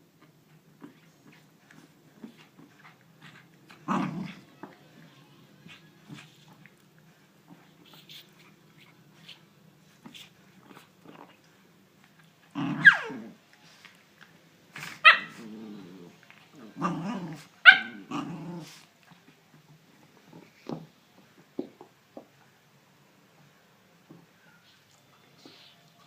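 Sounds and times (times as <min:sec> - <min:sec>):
dog growling and barking: 0:02.6 - 0:04.5, 0:12.5 - 0:13.4, 0:14.8 - 0:18.8.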